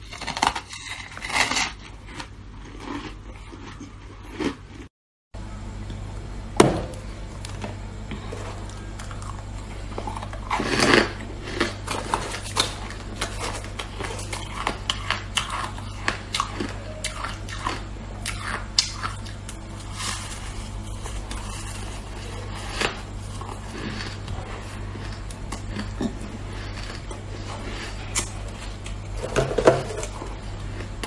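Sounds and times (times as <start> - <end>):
ice crunching while chewed: 0.0 - 4.9, 8.1 - 31.0
steady low hum: 0.0 - 31.0.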